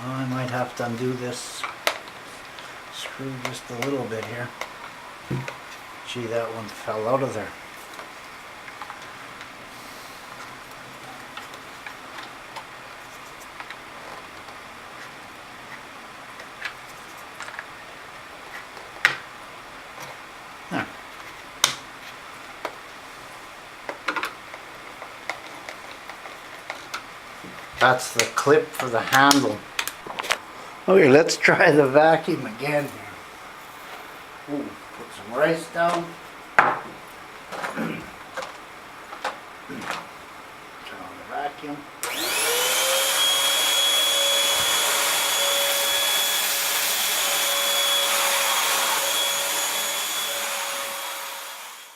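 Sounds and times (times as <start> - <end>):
vacuum motor whining: 42.0 - 51.9.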